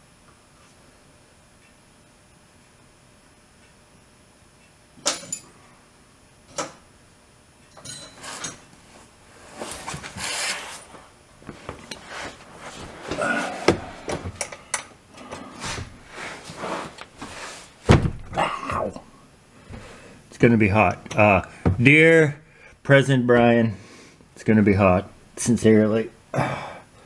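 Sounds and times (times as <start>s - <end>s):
hand tools clinking and clattering: 5.0s - 5.5s, 7.7s - 8.6s.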